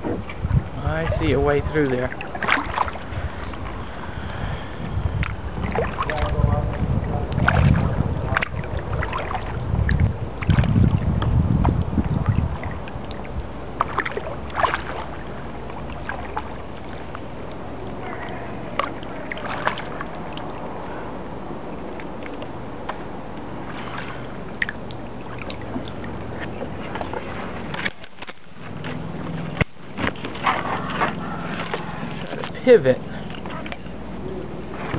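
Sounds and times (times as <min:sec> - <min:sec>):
wind noise: 0:00.0 - 0:13.5
paddle dipping and splashing: 0:00.0 - 0:34.9
water wash: 0:00.0 - 0:34.9
water drips: 0:21.7 - 0:28.5.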